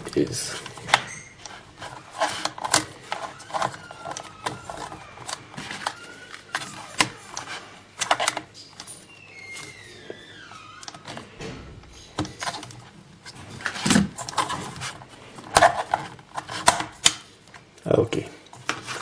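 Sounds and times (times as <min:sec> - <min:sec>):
blade squealing on plastic: 0:01.0 - 0:11.3.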